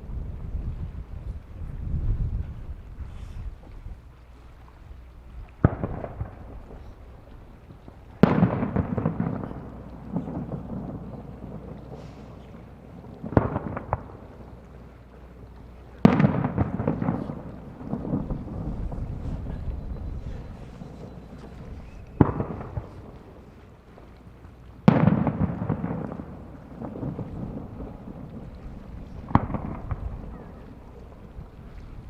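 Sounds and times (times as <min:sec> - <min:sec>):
rolling rumble and echo: 0:05.2 - 0:32.0
firework shells booming: 0:05.6 - 0:07.2, 0:07.9 - 0:14.4, 0:16.0 - 0:23.5, 0:24.8 - 0:30.7.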